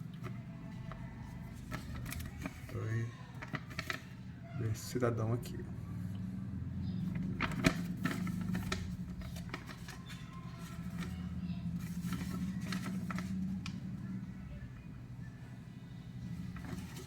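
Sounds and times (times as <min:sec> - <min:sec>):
handling clicks and packaging rustles: 0:00.1 - 0:04.1, 0:07.1 - 0:13.9, 0:16.2 - 0:17.0
steady low hum: 0:05.3 - 0:17.0.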